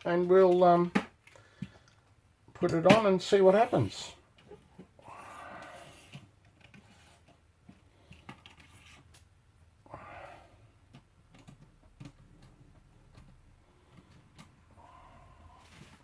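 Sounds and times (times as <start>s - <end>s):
small parts clicking and tapping: 10.8s - 14.6s.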